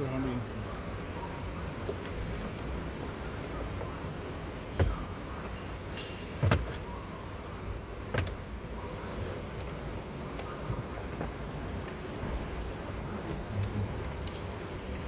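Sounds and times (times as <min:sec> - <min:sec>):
steady background hum: 0:00.0 - 0:15.0.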